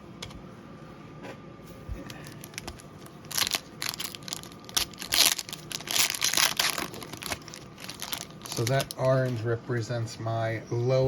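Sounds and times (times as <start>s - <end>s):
packaging crinkling and rustling: 2.0s - 9.5s.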